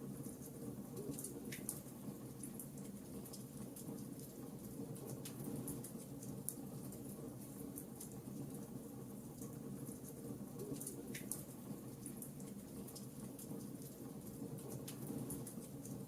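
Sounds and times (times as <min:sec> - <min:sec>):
wood fire crackling: 0:00.2 - 0:16.0.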